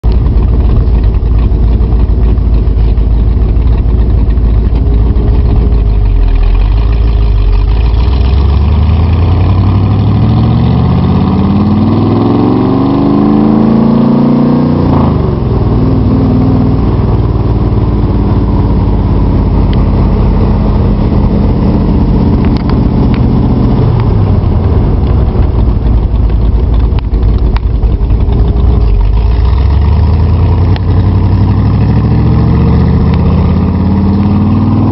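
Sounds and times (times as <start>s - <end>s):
car engine idling and revving: 0.0s - 34.9s.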